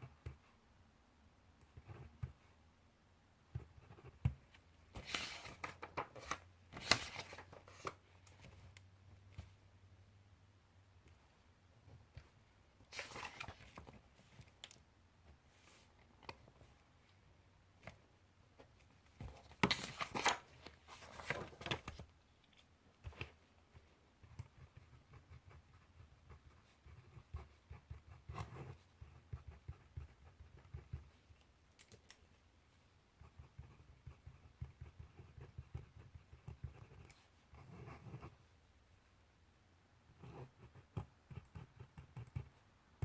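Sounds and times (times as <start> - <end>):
paper rustling: 5.0 - 8.5, 12.9 - 14.0, 19.2 - 22.0
pen scratching on paper: 24.2 - 31.1, 33.2 - 38.4, 40.1 - 42.5.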